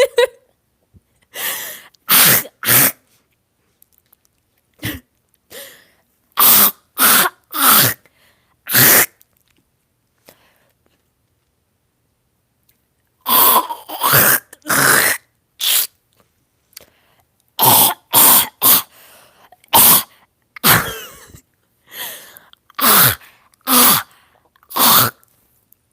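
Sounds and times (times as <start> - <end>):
person coughing: 2.1 - 3.0, 4.8 - 5.7, 17.6 - 18.9, 19.7 - 21.4, 22.8 - 24.1.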